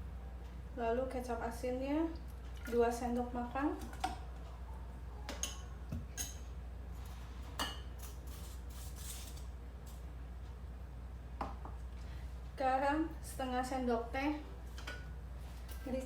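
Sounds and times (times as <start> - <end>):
low steady hum: 0.0 - 16.0
spoon clinking against pan and dishes: 5.3 - 6.5, 7.6 - 8.2.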